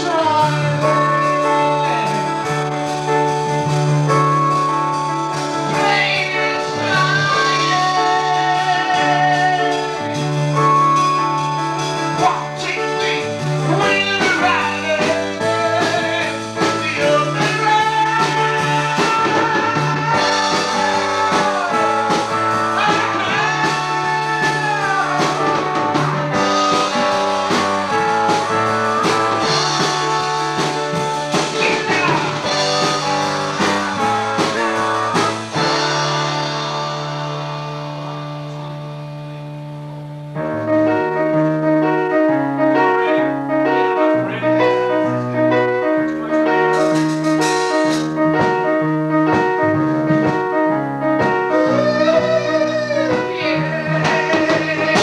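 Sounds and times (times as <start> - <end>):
band song with singing: 0.0 - 4.0, 5.3 - 10.7, 11.9 - 38.9, 51.2 - 55.0.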